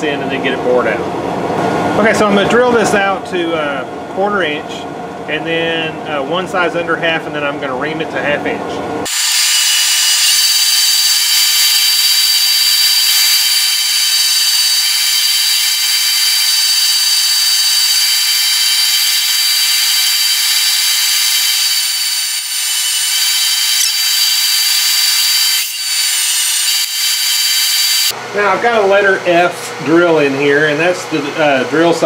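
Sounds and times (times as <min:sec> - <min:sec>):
drill bit boring through metal: 0:09.1 - 0:28.1.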